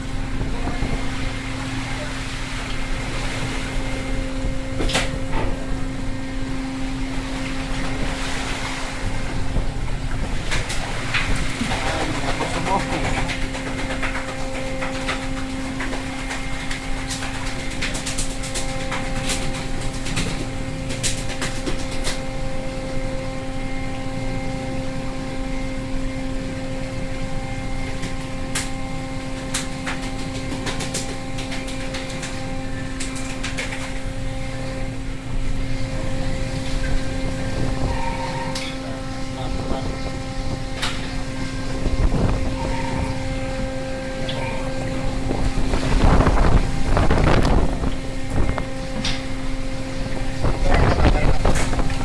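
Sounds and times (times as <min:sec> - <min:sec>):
boat machinery droning: 0:00.0 - 0:52.0.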